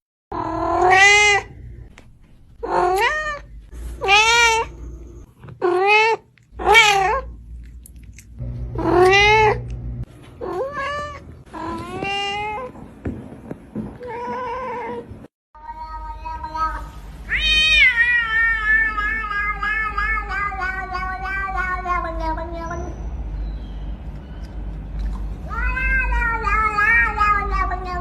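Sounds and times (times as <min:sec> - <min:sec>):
cat meowing: 0:00.3 - 0:01.6, 0:02.6 - 0:05.0, 0:05.6 - 0:07.3, 0:08.8 - 0:09.7, 0:10.4 - 0:12.8, 0:15.6 - 0:23.0, 0:25.4 - 0:28.0.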